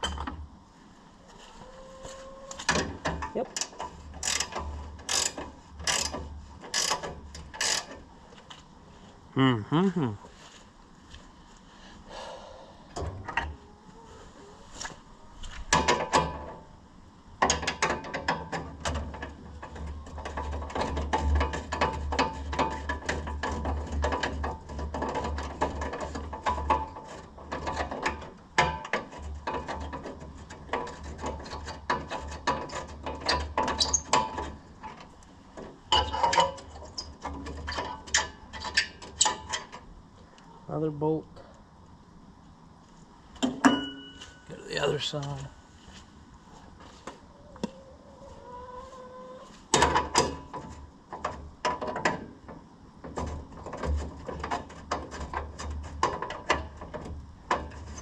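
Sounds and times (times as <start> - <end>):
ratchet wrench clicking: 3.6 - 8.0.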